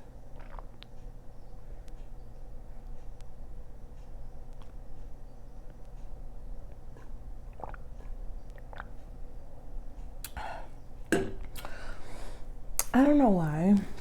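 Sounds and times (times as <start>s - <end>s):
person gulping water: 0.3s - 1.0s, 6.9s - 9.1s, 10.2s - 11.7s
mouth clicks: 7.5s - 9.1s, 10.2s - 10.5s
person breathing: 10.4s - 10.8s, 11.6s - 12.5s.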